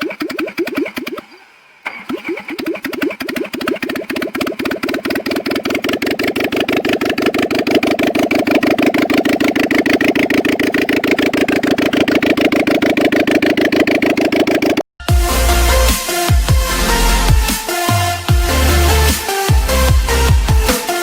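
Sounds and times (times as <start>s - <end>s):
car engine idling: 4.0s - 15.9s.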